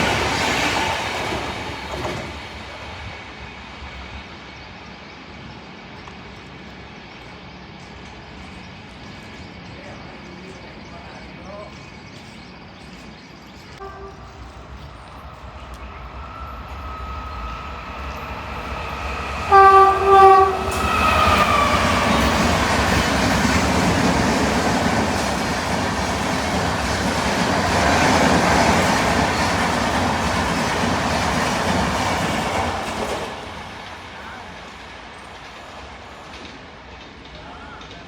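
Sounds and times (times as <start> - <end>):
train rumble and wheel clatter: 0.0 - 38.0
train horn blasts: 13.8 - 14.9, 19.4 - 22.4.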